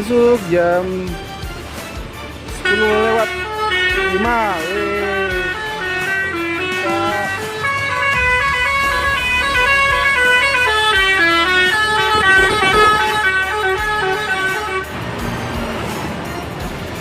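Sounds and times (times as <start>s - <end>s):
low engine rumble: 1.0s - 17.0s
musical air horn melody: 2.5s - 15.0s.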